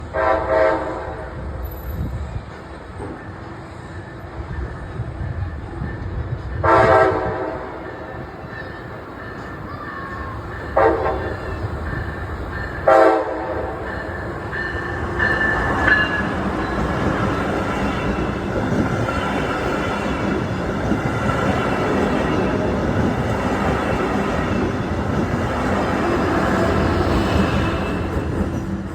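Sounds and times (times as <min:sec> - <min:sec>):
train rumble and wheel clatter: 0:00.0 - 0:28.9
train horn blasts: 0:00.1 - 0:01.3, 0:06.6 - 0:08.1, 0:10.7 - 0:11.7, 0:12.8 - 0:13.9.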